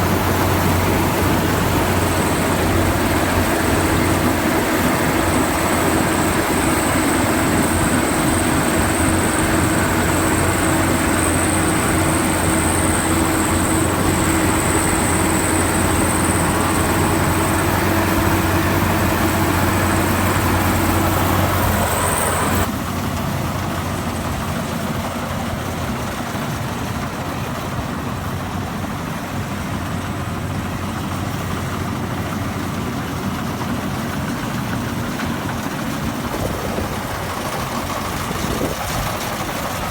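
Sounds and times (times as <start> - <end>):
high machinery whine: 0.0 - 23.1
combine harvester engine drone: 0.0 - 39.9.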